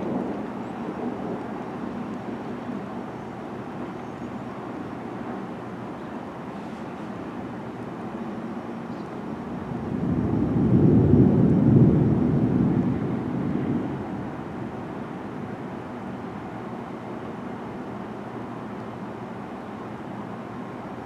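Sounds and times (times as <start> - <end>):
distant thunder rumble: 0.0 - 3.9, 9.4 - 15.8.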